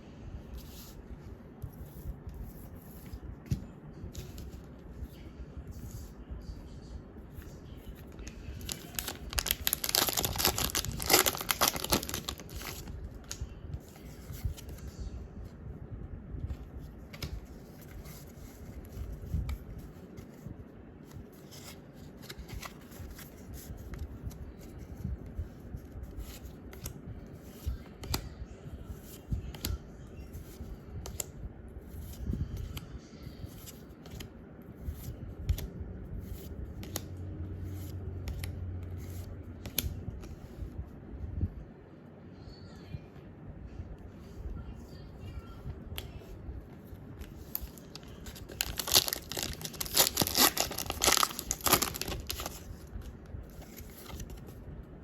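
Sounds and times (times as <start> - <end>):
foil pack tearing: 8.6 - 12.7, 48.5 - 52.5
trading cards flipped by hand: 34.9 - 37.1, 37.7 - 40.4.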